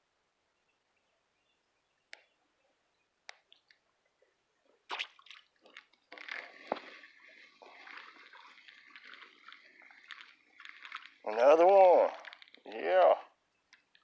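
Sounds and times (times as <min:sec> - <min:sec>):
water splashes and drips: 0:04.8 - 0:13.2.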